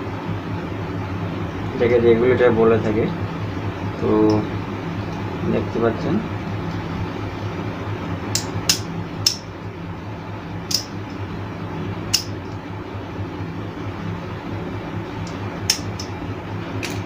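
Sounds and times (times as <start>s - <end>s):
clicks and taps on fan switch: 8.3s - 9.5s, 15.2s - 16.2s.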